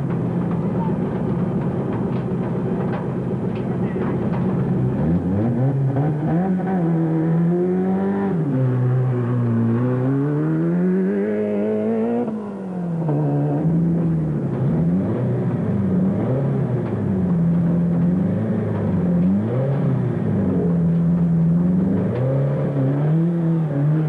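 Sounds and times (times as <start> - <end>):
race car engine revving: 3.5 - 24.0.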